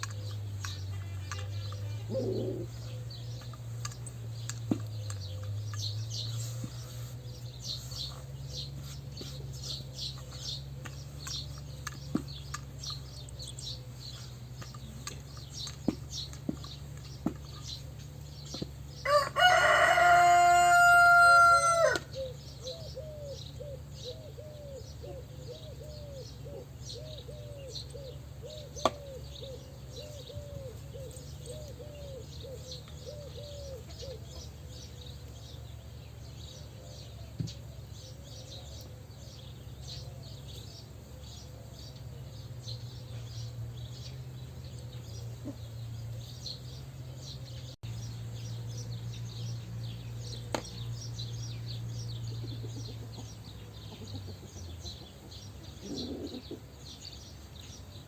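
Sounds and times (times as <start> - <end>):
small birds chirping: 0.0 - 58.0
soft clucking: 0.1 - 3.6, 52.3 - 56.7
rooster crowing: 19.0 - 22.3.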